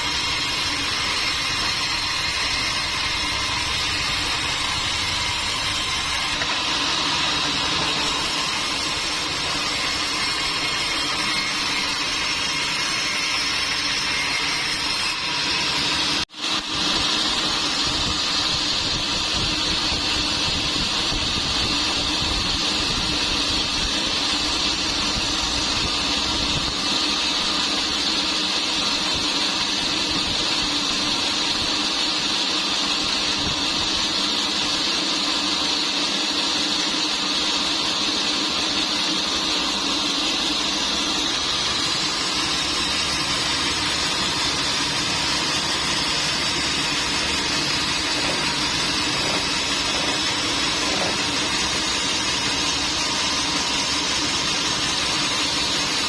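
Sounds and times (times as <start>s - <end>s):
sawmill machinery hum: 0.0s - 56.0s.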